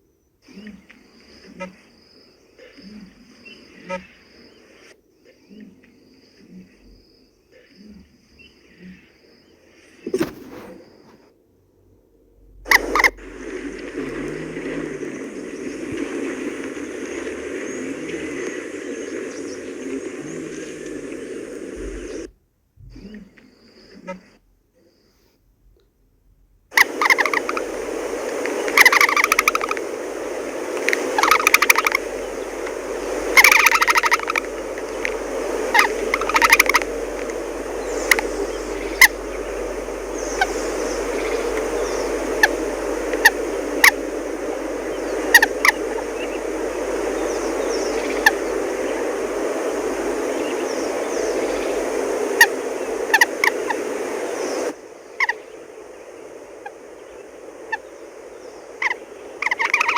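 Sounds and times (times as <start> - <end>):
birds calling harshly: 12.7 - 22.3, 26.7 - 55.7, 57.0 - 59.9
steady noisy background: 26.7 - 59.9.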